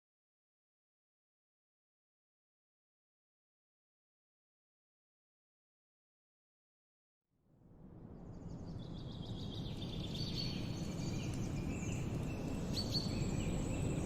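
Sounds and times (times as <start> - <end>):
birds chirping: 8.8 - 14.0.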